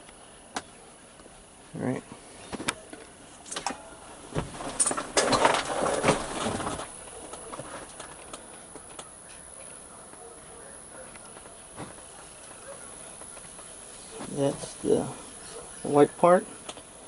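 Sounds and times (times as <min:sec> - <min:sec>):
plastic parts rattling and rubbing: 0:02.5 - 0:09.0.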